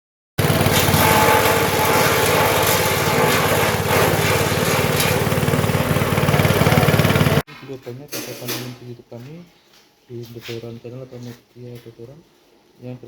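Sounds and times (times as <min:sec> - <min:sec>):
small engine running steadily: 0:00.4 - 0:07.4.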